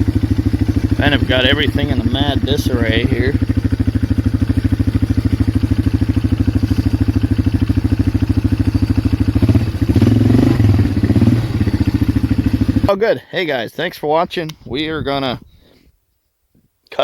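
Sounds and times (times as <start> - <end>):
engine idling: 0.0 - 12.9
engine revving: 0.0 - 12.9.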